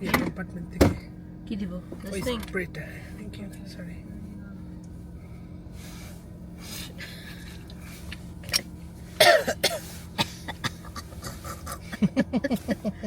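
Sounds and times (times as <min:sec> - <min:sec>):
person coughing: 0:09.2 - 0:12.2
person laughing: 0:10.8 - 0:13.0.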